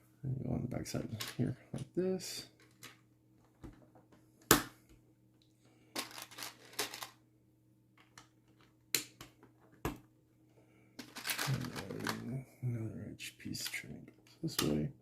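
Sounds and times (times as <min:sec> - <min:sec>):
plastic pieces rattling: 0:06.0 - 0:07.2, 0:11.0 - 0:12.3.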